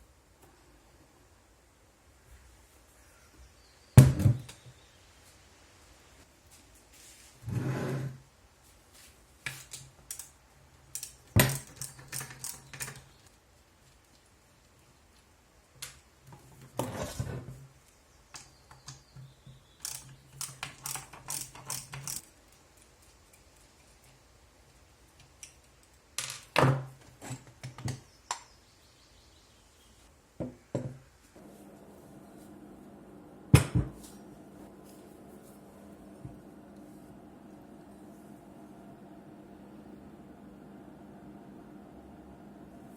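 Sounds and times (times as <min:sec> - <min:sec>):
tools and parts clinking: 0:19.8 - 0:24.2
faint steady hum: 0:27.9 - 0:42.9.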